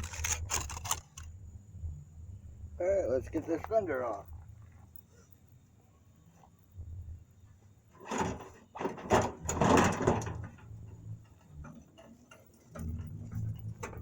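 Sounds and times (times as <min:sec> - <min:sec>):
metal scraping and clunking: 0:07.9 - 0:14.0.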